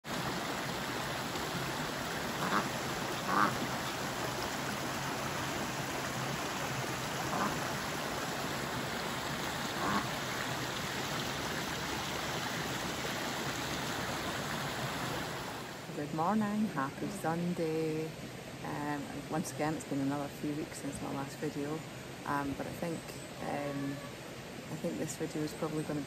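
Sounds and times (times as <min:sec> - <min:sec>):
ducks quacking: 0:02.2 - 0:04.0, 0:07.2 - 0:07.9, 0:09.6 - 0:10.3.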